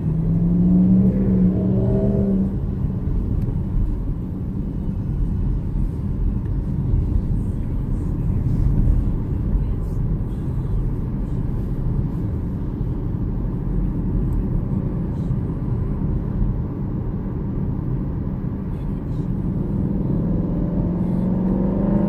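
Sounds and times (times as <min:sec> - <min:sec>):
engine accelerating: 0:00.0 - 0:05.0, 0:19.4 - 0:22.0
car cabin road rumble: 0:00.0 - 0:22.0.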